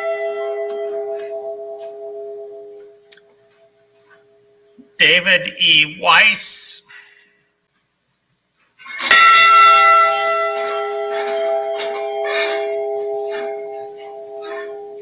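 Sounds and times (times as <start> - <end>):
ship's bell ringing: 0.0 - 3.0, 9.2 - 15.0.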